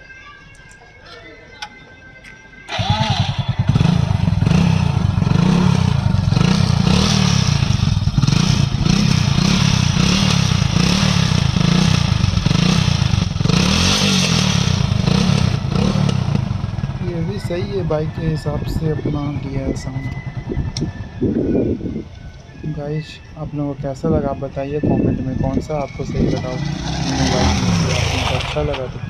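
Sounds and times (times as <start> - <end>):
motorcycle engine revving: 2.7 - 22.0, 25.8 - 29.0.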